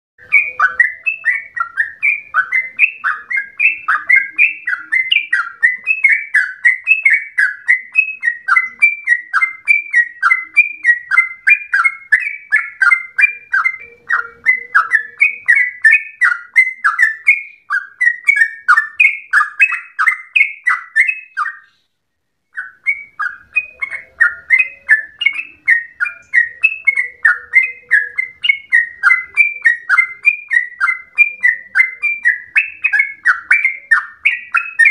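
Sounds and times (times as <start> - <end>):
bird singing falling notes: 0.2 - 34.9.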